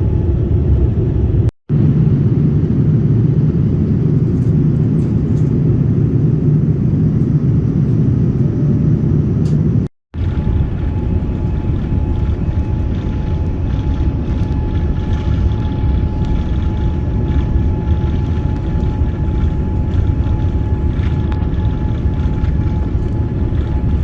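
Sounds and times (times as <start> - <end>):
airplane cabin engine rumble: 0.0 - 24.0
faint constant whine: 10.2 - 24.0.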